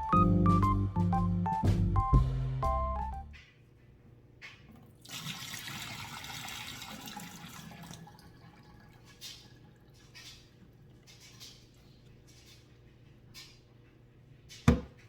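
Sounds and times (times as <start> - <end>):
water running from a tap: 5.0 - 11.1.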